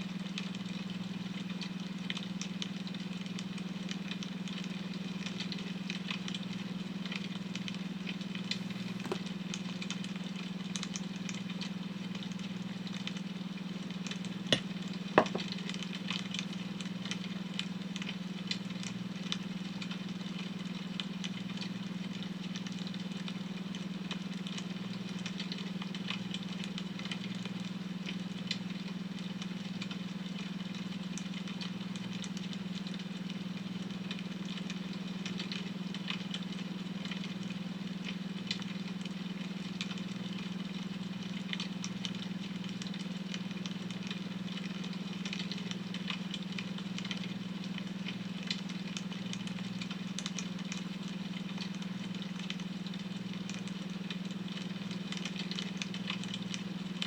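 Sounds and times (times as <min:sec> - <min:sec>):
wood fire crackling: 0:08.3 - 0:09.5.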